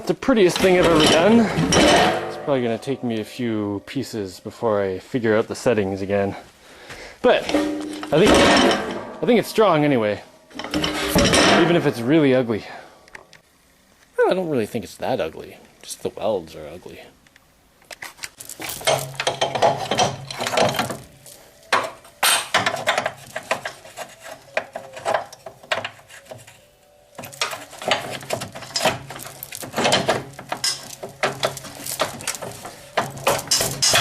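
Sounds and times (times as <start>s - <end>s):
metal parts clanking: 0.4s - 3.2s, 7.4s - 12.1s, 18.4s - 26.6s, 27.2s - 34.0s.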